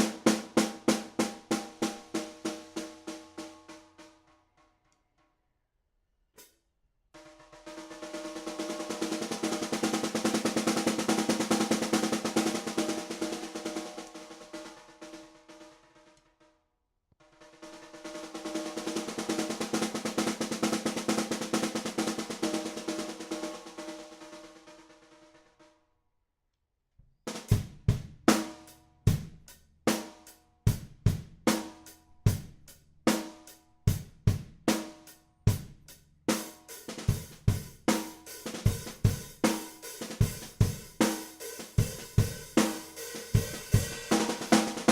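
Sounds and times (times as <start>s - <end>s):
snare drum roll: 0.0s - 4.3s, 7.2s - 16.4s, 17.2s - 25.7s, 36.3s - 44.9s.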